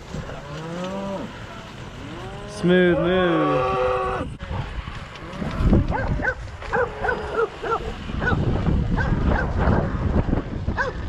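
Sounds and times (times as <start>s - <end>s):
dogs barking: 5.9s - 9.8s, 10.8s - 11.0s.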